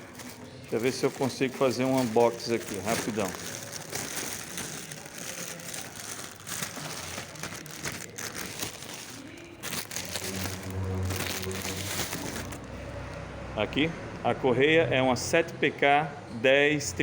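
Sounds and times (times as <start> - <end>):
packaging crinkling and rustling: 0.0 - 12.7.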